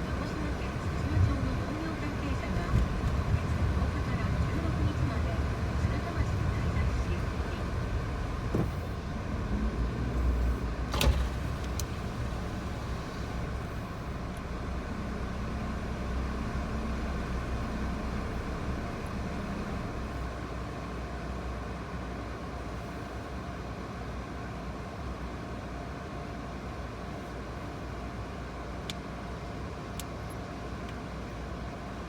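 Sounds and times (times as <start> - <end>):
car engine rumble inside cabin: 0.0 - 32.0.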